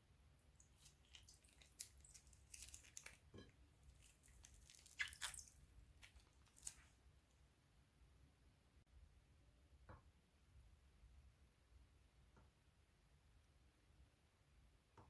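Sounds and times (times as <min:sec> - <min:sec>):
crunchy slime crackling and squishing: 0:00.4 - 0:07.1.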